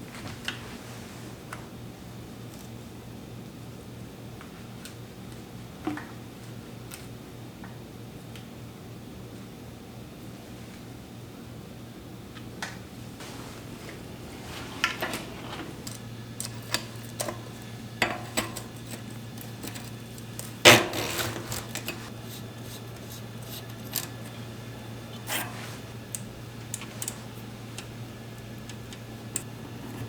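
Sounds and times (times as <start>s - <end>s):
steady low hum: 10.5s - 30.0s.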